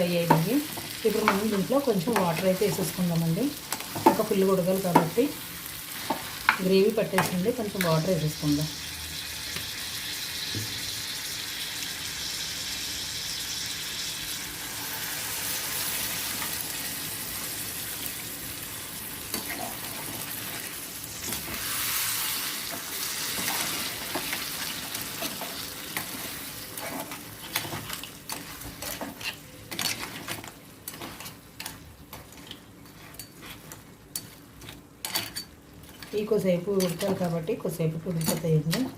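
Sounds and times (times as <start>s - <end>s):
food sizzling in a pan: 0.0s - 38.9s
spoon scraping a pan: 19.3s - 37.3s.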